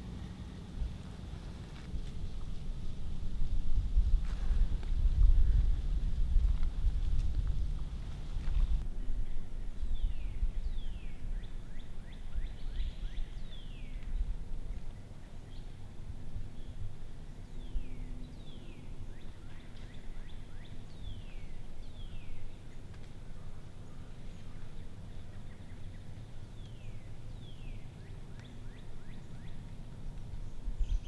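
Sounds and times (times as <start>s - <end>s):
low outdoor rumble: 0.0s - 9.1s.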